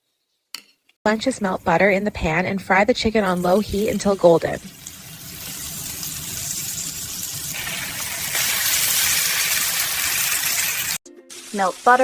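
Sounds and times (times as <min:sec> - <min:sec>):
chicken sizzling in frying pan: 0:03.3 - 0:12.0.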